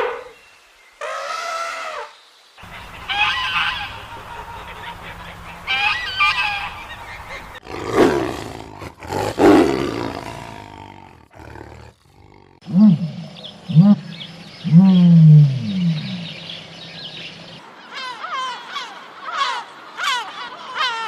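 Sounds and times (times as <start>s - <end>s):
animal calls: 1.0s - 16.5s.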